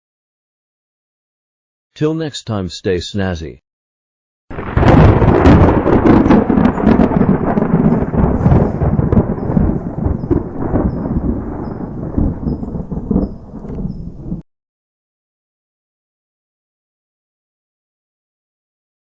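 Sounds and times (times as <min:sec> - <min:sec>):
loud rumbling crackling noise: 0:04.5 - 0:14.4.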